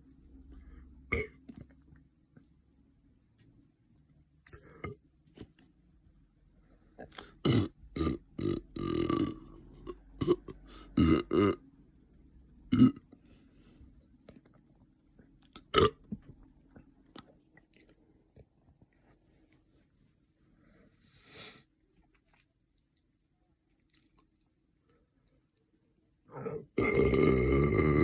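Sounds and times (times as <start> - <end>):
person burping: 1.1 - 1.5, 7.0 - 11.6, 12.7 - 13.0, 15.6 - 16.0, 26.4 - 28.0.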